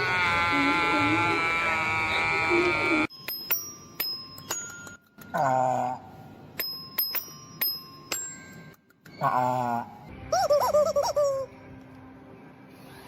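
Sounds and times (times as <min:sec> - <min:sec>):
sharp ringing pings: 0:03.1 - 0:05.1, 0:06.6 - 0:08.8.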